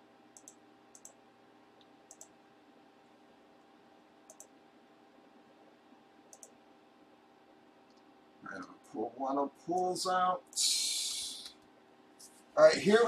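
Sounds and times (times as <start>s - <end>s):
faint electrical hum: 0.0s - 13.0s
computer mouse double-clicking: 0.4s - 1.2s, 2.1s - 2.3s, 4.3s - 4.5s, 6.3s - 6.5s.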